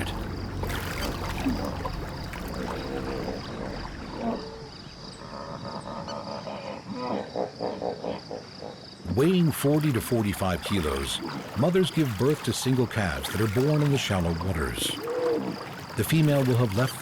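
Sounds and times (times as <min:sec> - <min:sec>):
water splashing and churning: 0:00.0 - 0:05.2, 0:09.1 - 0:17.0
hippos grunting and bellowing: 0:00.0 - 0:12.6, 0:13.2 - 0:17.0.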